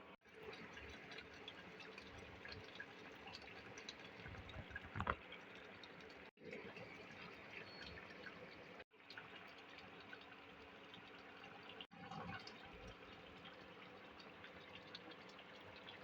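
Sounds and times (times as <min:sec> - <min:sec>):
curry bubbling in a pot: 0:00.2 - 0:16.0.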